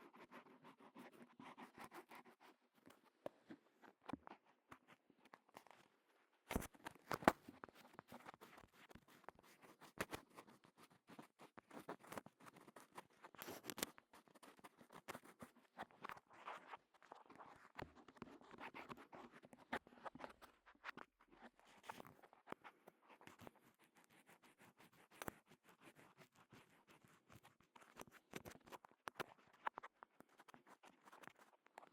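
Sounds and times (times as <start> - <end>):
scratching and rubbing at microphone: 0.0 - 31.9.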